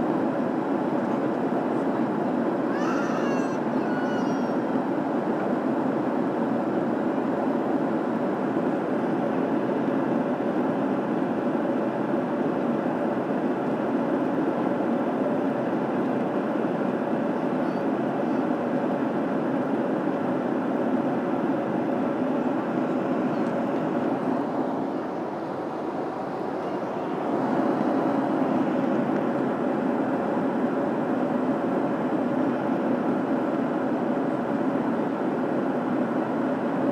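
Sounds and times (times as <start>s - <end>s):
airplane cabin engine rumble: 0.0s - 36.9s.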